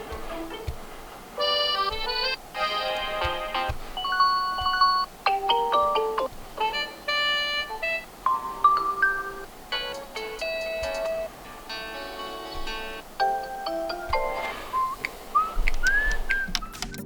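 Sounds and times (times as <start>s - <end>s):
electronic ringtone melodies: 4.0s - 11.3s.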